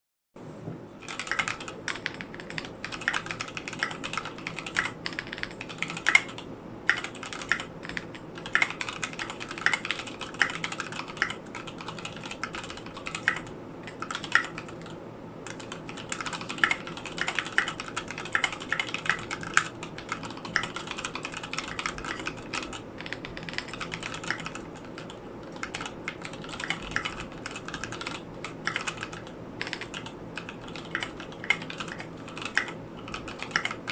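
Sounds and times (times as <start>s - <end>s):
mechanical keyboard typing: 1.0s - 33.9s.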